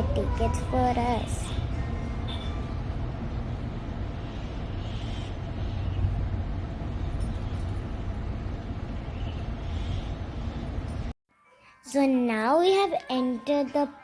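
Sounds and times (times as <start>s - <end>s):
outdoor background rumble: 0.0s - 11.2s.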